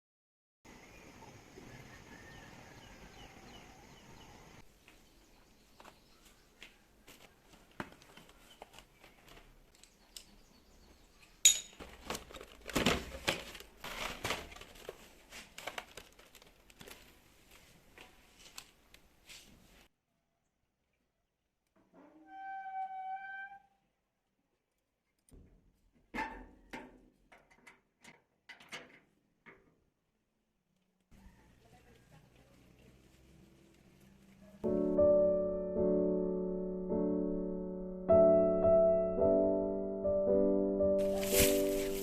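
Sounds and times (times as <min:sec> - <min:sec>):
crinkly material rustling: 0:11.8 - 0:19.9, 0:41.0 - 0:42.0.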